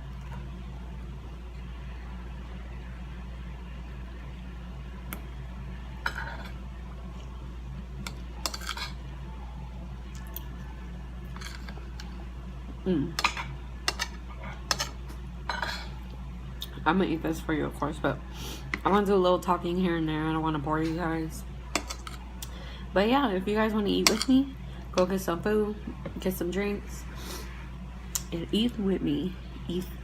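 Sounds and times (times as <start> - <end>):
steady low hum: 0.0 - 30.0
cutlery clinking on a plate: 8.4 - 9.0.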